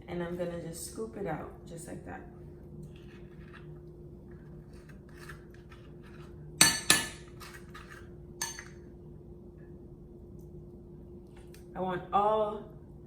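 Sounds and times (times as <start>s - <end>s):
spoon scraping avocado: 2.9s - 6.4s, 7.3s - 8.1s
spoon clinking on bowl: 8.4s - 8.8s.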